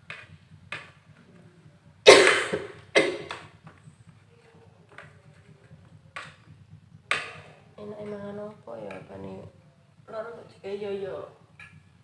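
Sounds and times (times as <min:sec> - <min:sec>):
person coughing: 0:02.1 - 0:03.3.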